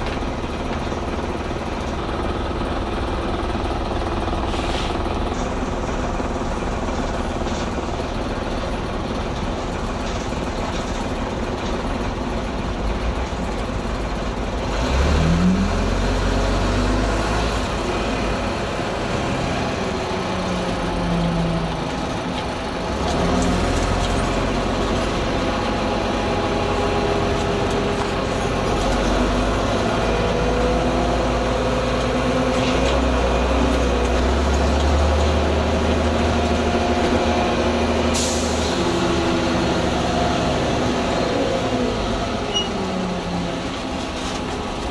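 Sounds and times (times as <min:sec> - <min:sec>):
bus engine pulling away: 0:00.0 - 0:44.9
air brake hisses: 0:04.5 - 0:05.0, 0:38.1 - 0:38.7.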